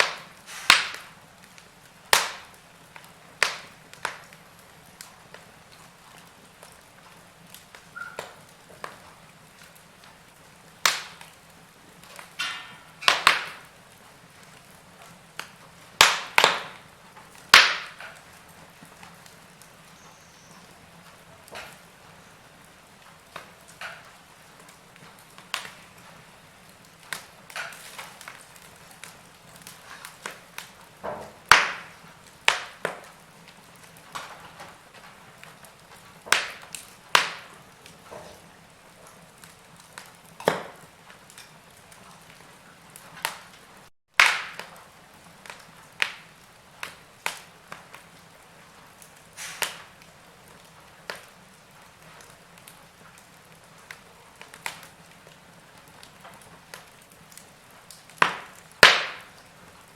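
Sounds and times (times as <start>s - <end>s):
wood fire crackling and popping: 0.0s - 59.9s.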